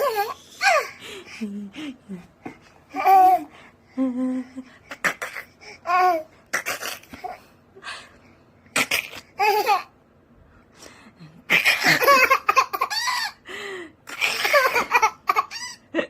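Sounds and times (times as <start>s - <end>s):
baby babbling and laughing: 2.9s - 3.5s, 4.9s - 7.4s, 9.2s - 9.9s.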